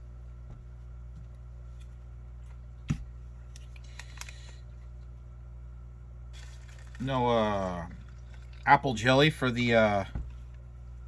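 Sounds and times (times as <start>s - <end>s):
packet rustling: 6.4s - 7.3s.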